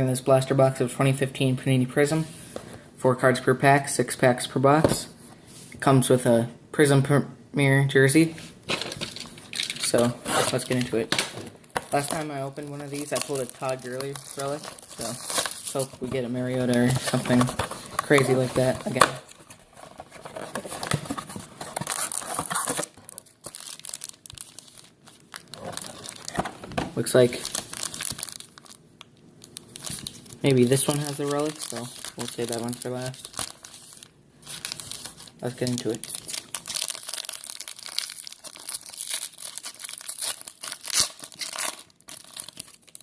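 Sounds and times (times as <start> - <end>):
card packs handled: 8.7 - 28.8, 29.4 - 43.0
plastic wrapping crinkling and tearing: 8.7 - 43.0.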